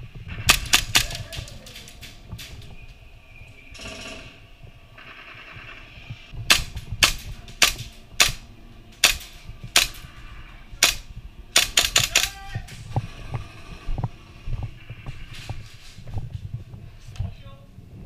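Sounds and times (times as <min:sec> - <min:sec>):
airsoft gun shots: 0:00.4 - 0:01.4, 0:06.5 - 0:10.0.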